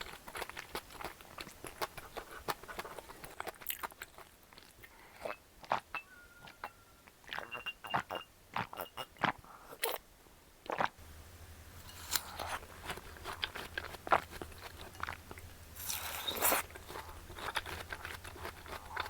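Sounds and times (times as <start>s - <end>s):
crunchy chewing: 0.0s - 5.9s, 11.8s - 19.0s.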